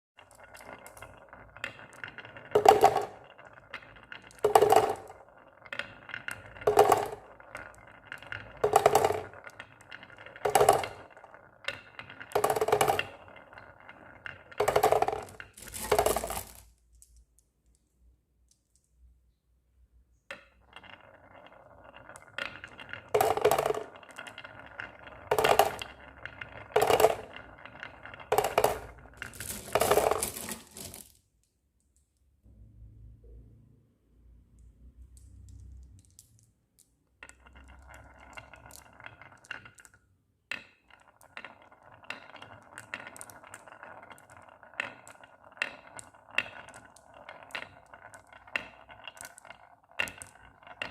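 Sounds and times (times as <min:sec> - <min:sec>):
marbles rolling down a marble run: 0:00.2 - 0:18.9, 0:20.3 - 0:31.2, 0:34.6 - 0:50.9
loud marble clack: 0:20.3 - 0:31.1.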